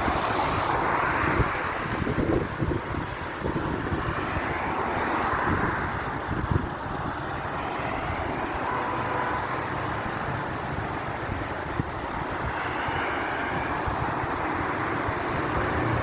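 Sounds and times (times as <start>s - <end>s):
strong wind blowing: 0.0s - 8.6s, 10.0s - 16.0s
wind buffeting microphone: 0.0s - 8.6s, 9.7s - 16.0s.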